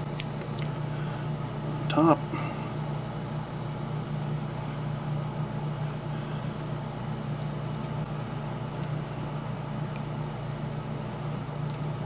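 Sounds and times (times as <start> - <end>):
light ticks of small parts: 9.9 - 12.0.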